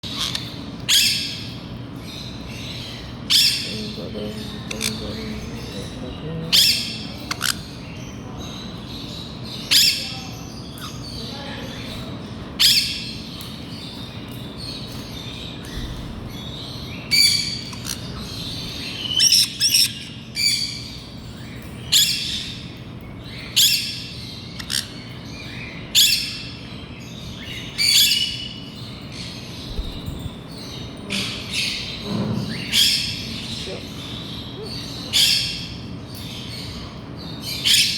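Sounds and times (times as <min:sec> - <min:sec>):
steady low hum: 0:00.0 - 0:37.9.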